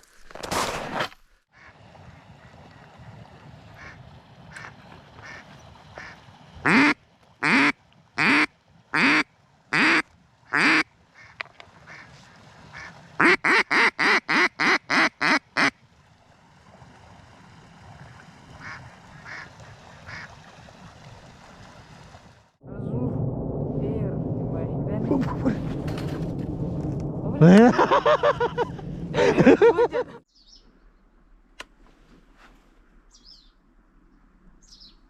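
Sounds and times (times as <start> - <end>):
duck quacking: 6.0 - 12.1, 12.7 - 15.7.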